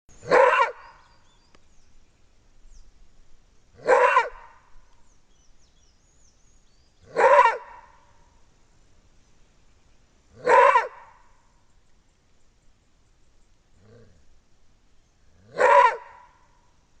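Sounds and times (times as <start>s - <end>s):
wolf barking: 0.2s - 1.0s, 3.8s - 4.6s, 7.1s - 8.0s, 10.4s - 11.2s, 15.4s - 16.4s
faint bird chirps: 4.9s - 7.2s.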